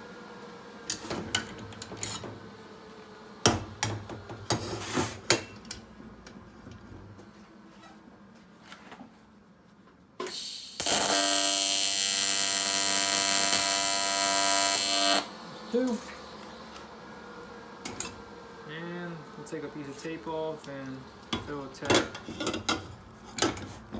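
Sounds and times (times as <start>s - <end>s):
welding arc buzzing: 10.2s - 23.4s.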